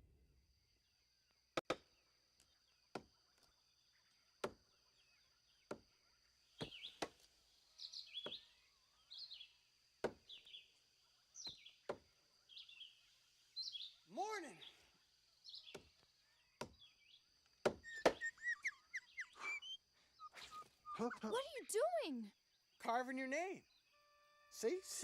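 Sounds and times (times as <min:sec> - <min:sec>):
bird chirps: 0:02.4 - 0:25.0
faint steady high tone: 0:23.7 - 0:25.0.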